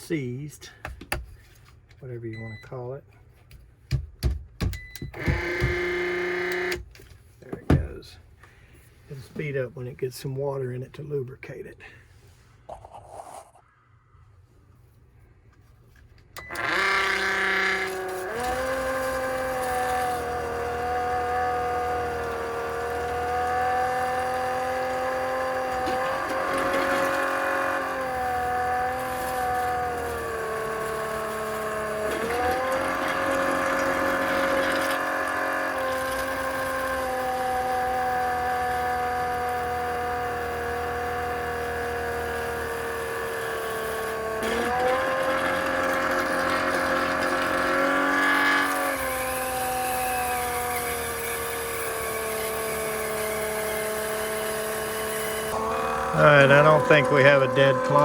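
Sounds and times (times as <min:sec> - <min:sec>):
water pump motor whining: 0:04.7 - 0:08.1, 0:16.4 - 0:58.0.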